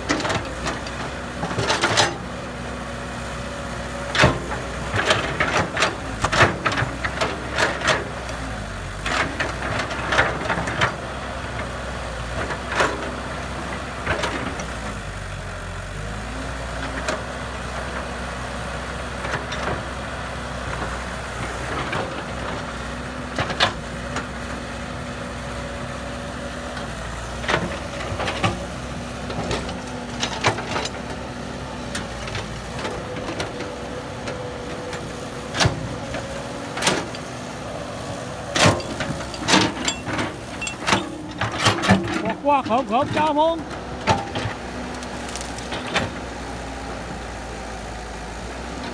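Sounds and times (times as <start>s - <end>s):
heavy diesel engine running: 0.0s - 48.9s
metal knocks and clanks: 38.6s - 44.6s.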